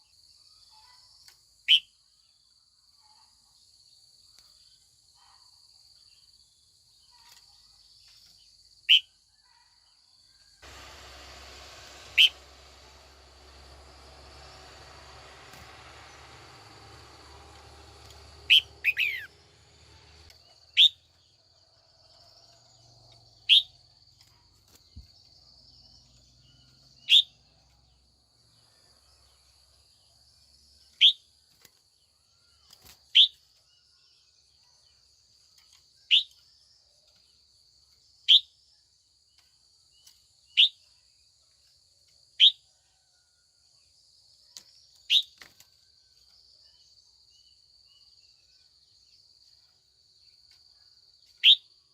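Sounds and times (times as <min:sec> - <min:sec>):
faint high insect drone: 0:00.0 - 0:51.9
bird calls dropping in pitch: 0:18.1 - 0:19.3.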